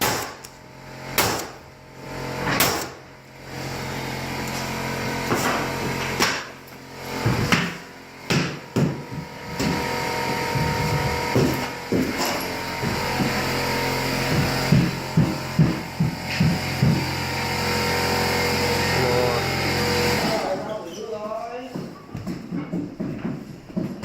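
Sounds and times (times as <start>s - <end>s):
steady hum: 0.0s - 20.4s
knocks and thumps: 7.2s - 13.4s, 14.2s - 17.2s.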